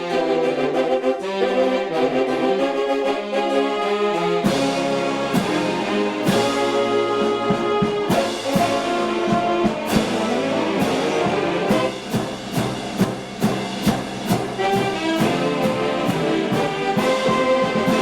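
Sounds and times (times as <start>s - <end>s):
steady drum beat: 4.4s - 18.0s
string band chords: 4.4s - 18.0s.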